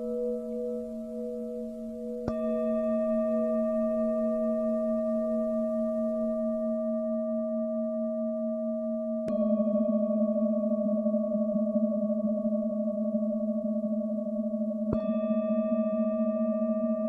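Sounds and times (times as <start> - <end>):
bowl being struck: 0.0 - 7.2, 9.2 - 12.0
singing bowls ringing: 0.0 - 7.5.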